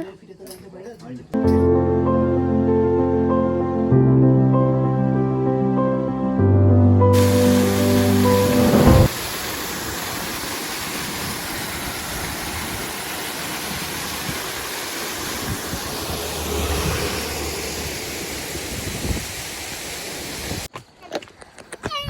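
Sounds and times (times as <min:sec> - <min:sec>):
waterfall rushing: 0:07.1 - 0:20.7.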